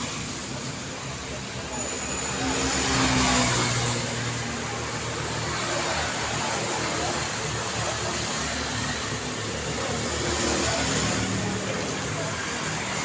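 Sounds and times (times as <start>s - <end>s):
passing vehicles hum: 0.0s - 13.0s
tyres hissing on road: 0.0s - 13.0s.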